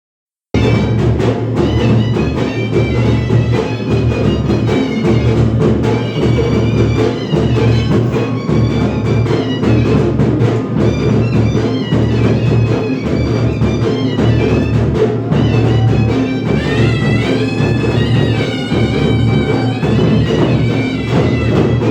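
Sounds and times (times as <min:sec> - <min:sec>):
high wavering melody: 0:00.6 - 0:21.9
rapid folk drumming: 0:00.6 - 0:21.9.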